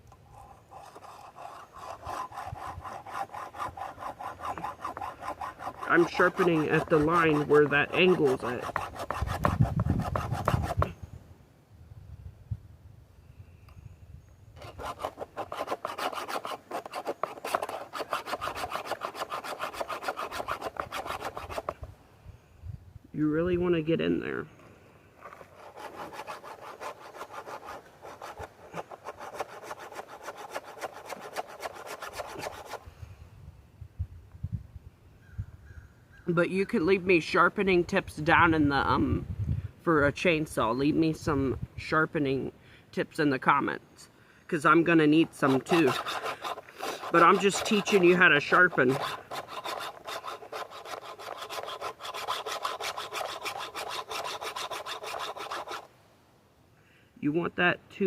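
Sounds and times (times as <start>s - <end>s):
file scraping chainsaw chain: 0.3s - 10.9s, 14.6s - 21.8s, 25.2s - 32.8s, 45.1s - 55.9s.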